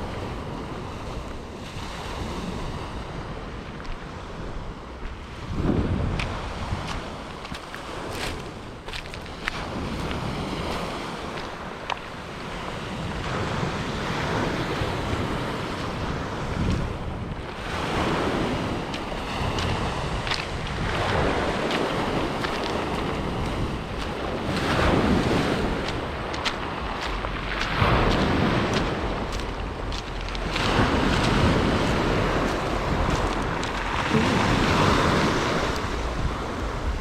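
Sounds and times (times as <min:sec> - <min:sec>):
sea waves washing: 0:00.0 - 0:37.0
wind buffeting microphone: 0:00.0 - 0:37.0.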